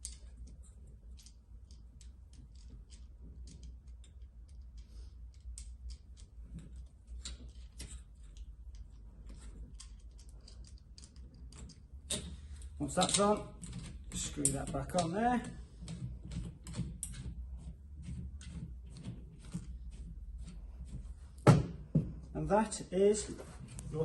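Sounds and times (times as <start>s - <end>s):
small metal parts clicking: 0.0s - 17.4s.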